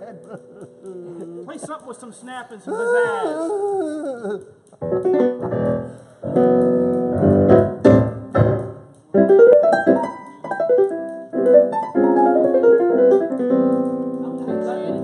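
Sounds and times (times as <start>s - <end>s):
keyboard piano chords and notes: 0.0s - 1.5s, 4.8s - 15.0s.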